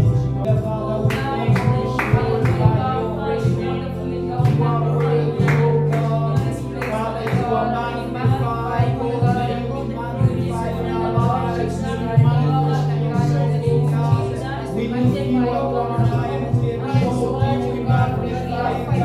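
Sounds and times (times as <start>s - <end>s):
steady bass and beat: 0.0s - 14.4s
worship music with singing: 0.0s - 19.0s.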